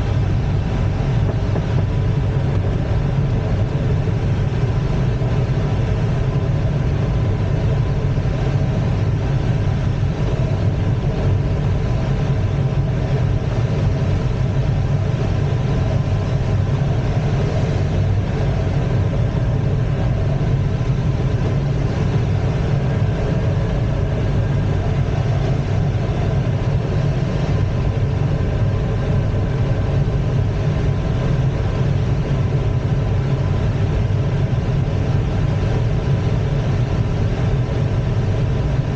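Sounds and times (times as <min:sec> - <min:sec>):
glider cockpit wind rush: 0:00.0 - 0:38.9.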